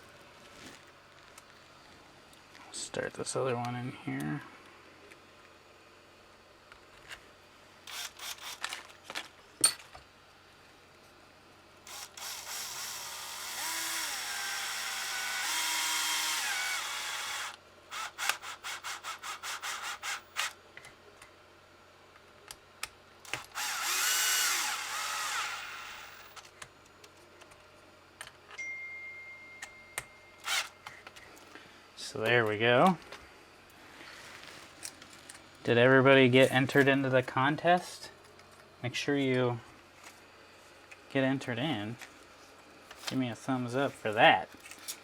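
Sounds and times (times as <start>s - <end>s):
electric screwdriver motor whine: 7.9s - 8.6s, 11.9s - 20.6s, 23.3s - 26.4s, 30.4s - 30.7s.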